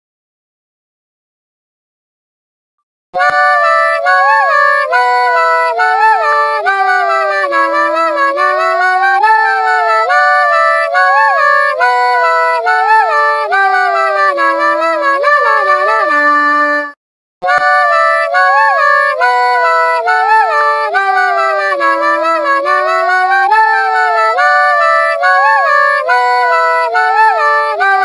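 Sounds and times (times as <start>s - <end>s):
phone ringtone melody: 3.2s - 28.0s.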